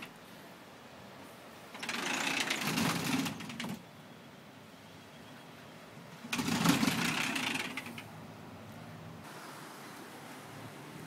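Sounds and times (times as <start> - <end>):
sliding door rolling on track: 1.7 - 3.8, 6.2 - 8.1.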